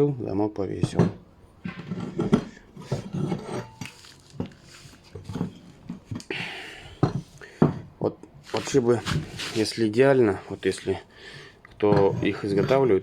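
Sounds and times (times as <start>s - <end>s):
short rustle: 8.4s - 11.0s.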